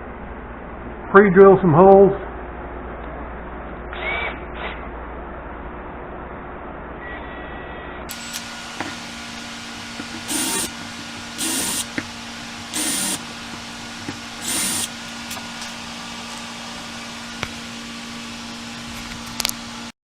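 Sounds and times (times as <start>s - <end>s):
steady low hum: 0.0s - 19.9s
power drill drilling into wood: 8.1s - 15.4s.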